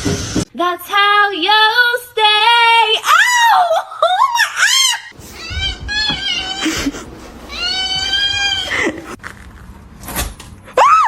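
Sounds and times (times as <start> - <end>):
cat meowing: 5.2 - 6.9, 7.5 - 9.2.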